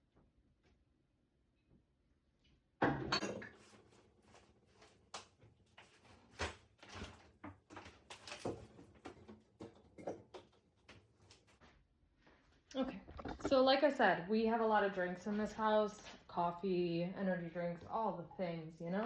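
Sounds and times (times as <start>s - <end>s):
bottles and containers clattering: 2.8s - 3.9s, 12.8s - 13.6s.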